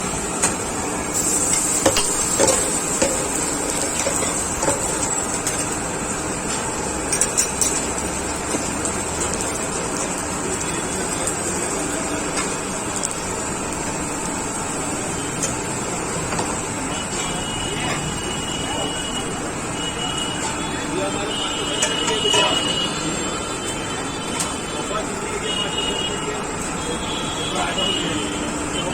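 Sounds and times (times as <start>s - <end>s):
omelette sizzling on griddle: 0.0s - 23.0s.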